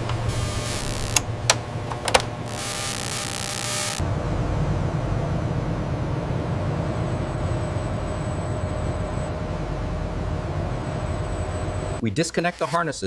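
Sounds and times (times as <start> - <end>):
loud hiss: 0.0 - 1.2, 2.4 - 4.0
low mechanical rumble: 0.0 - 12.6
faint hum: 0.0 - 13.0.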